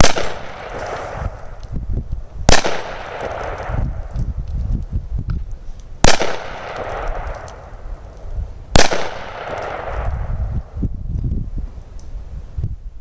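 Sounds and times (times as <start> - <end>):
gunshots with echo: 0.0 - 1.4, 2.5 - 3.8, 6.0 - 7.5, 8.7 - 10.4.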